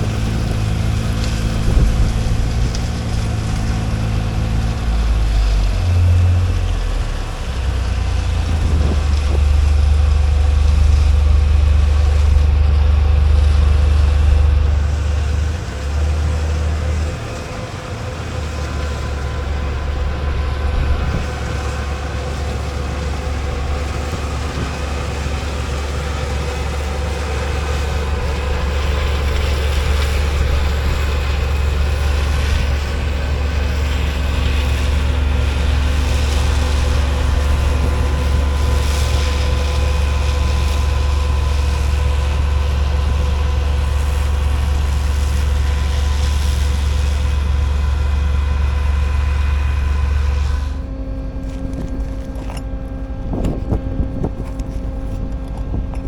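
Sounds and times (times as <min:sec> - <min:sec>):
combine harvester engine drone: 0:00.0 - 0:56.0
machine hum: 0:00.0 - 0:56.0.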